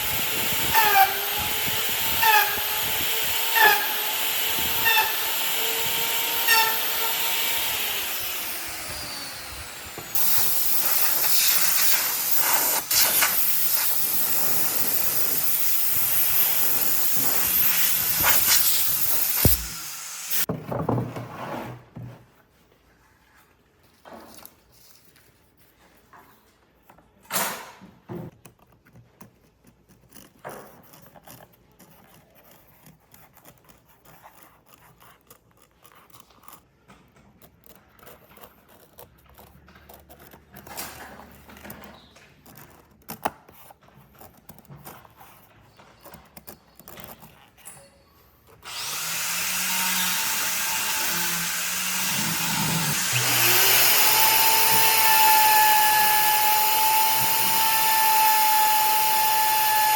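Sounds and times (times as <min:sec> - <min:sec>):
power tool whining: 0:00.0 - 0:20.5, 0:48.6 - 0:59.9.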